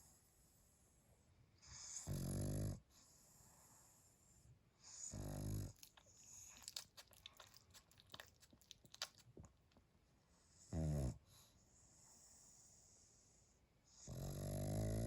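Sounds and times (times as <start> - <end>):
dog snoring: 1.6 - 4.0, 4.8 - 6.5, 10.5 - 13.2, 13.9 - 15.0.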